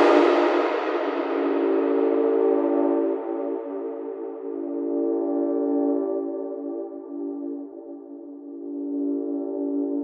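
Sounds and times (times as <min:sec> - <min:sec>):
synthesized train horn chord: 0:00.0 - 0:04.0.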